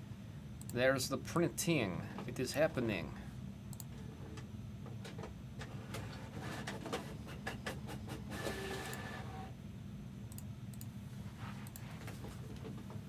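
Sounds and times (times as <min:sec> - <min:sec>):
steady low hum: 0:00.0 - 0:13.0
printer clicking and whirring: 0:05.0 - 0:09.5.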